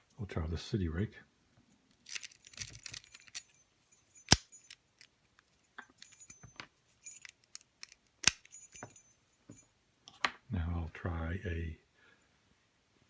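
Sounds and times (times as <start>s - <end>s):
lock picks scraping in padlock: 2.0s - 4.9s, 5.8s - 9.6s
sharp metallic click: 4.2s - 4.8s.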